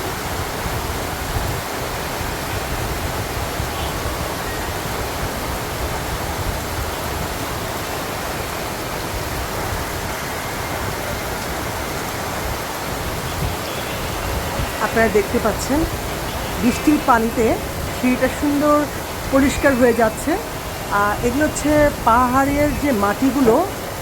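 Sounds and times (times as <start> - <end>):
heavy rain falling: 0.0 - 24.0
water running down steps: 0.5 - 24.0.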